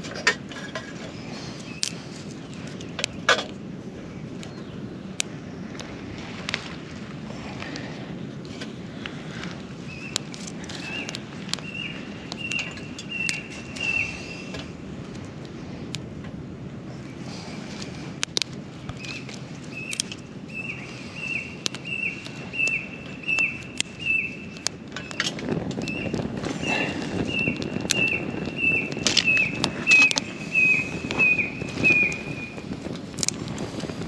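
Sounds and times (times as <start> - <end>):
sharp clicks: 1.6 - 3.2, 10.0 - 14.0, 18.2 - 20.2, 21.6 - 26.3, 27.3 - 33.7
low rustle: 3.6 - 21.2, 23.9 - 34.0
bird calling repeated notes: 9.8 - 14.5, 19.0 - 32.7.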